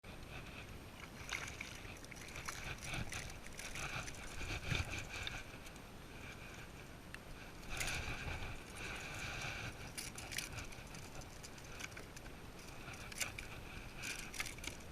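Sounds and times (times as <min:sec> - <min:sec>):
paddle splashing and knocking: 0:01.0 - 0:05.4.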